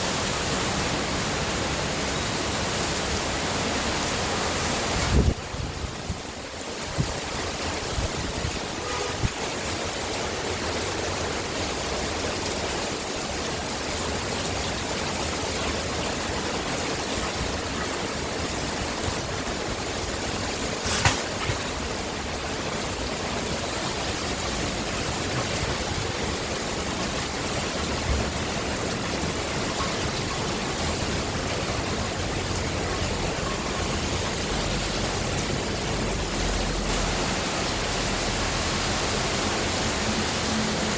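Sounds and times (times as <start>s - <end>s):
heavy rain pouring: 0.0s - 40.9s.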